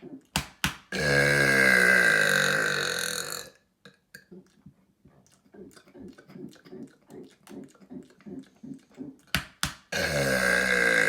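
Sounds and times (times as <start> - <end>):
man burping deeply: 0.9 - 3.6, 9.9 - 11.0
man gulping: 0.9 - 4.6, 9.9 - 11.0.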